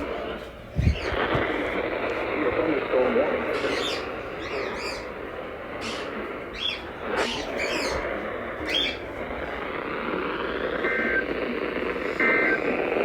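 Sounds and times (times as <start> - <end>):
small birds chirping: 0.7 - 1.3, 3.6 - 5.2, 5.8 - 9.1
electronic two-tone burst: 10.8 - 11.4, 12.0 - 13.0.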